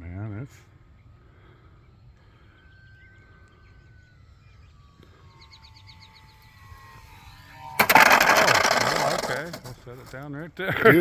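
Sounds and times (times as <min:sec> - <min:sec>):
distant electric motor whine: 0:00.6 - 0:10.3
bird chirping: 0:00.8 - 0:07.6.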